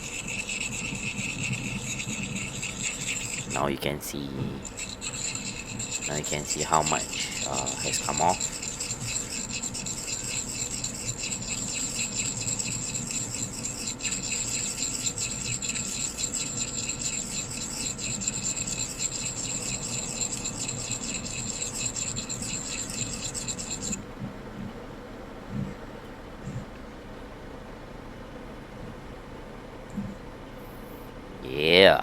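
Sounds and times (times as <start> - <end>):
sharpening stone scraping axe blade: 0.0 - 3.8, 4.6 - 24.0.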